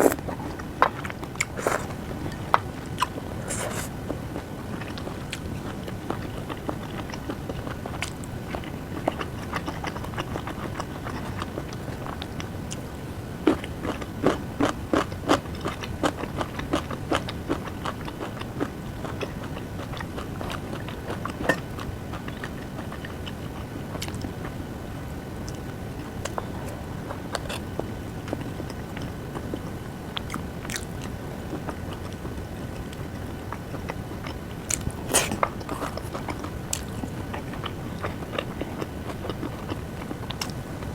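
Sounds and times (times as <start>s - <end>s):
person chewing: 0.0s - 12.8s, 13.4s - 24.6s, 33.5s - 40.6s.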